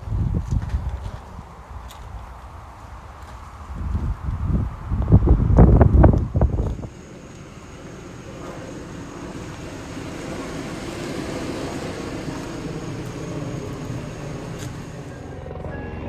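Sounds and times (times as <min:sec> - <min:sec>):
car engine running: 0:05.1 - 0:15.7.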